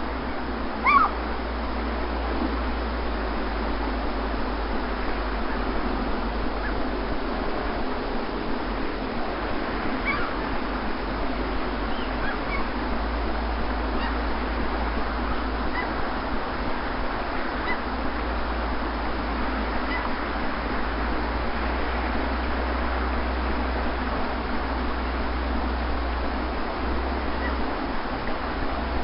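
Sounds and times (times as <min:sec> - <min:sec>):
sea surf on a beach: 0:00.0 - 0:29.0
faint short bird calls: 0:00.8 - 0:01.2, 0:10.0 - 0:10.4, 0:11.9 - 0:12.7, 0:14.0 - 0:14.2, 0:19.8 - 0:20.2, 0:27.4 - 0:27.6.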